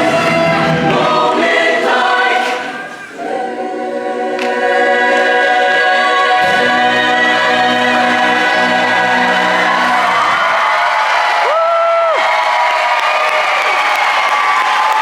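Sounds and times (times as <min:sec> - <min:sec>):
choir singing in harmony: 0:00.0 - 0:11.4.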